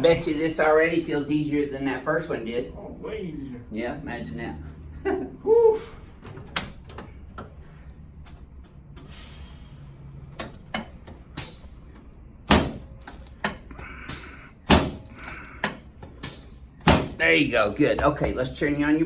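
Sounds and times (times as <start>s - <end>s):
sharp knocks and clunks: 10.3s - 18.9s.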